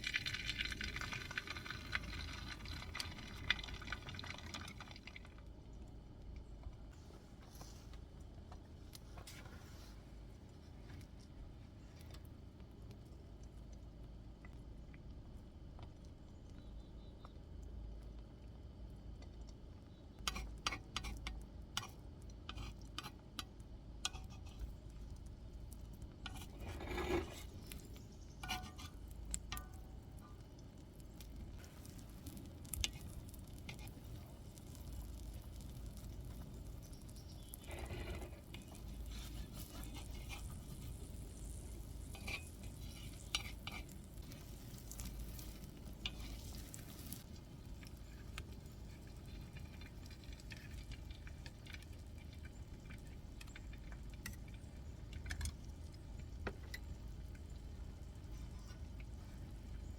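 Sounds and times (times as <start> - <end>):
small hard objects clicking: 0.0 - 5.4, 20.2 - 48.6
scraping sounds: 26.3 - 29.1, 37.6 - 47.3.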